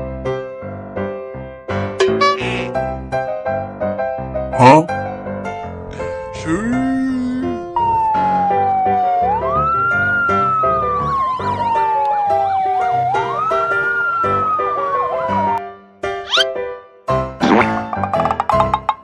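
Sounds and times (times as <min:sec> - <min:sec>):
siren wailing: 0:08.0 - 0:15.6.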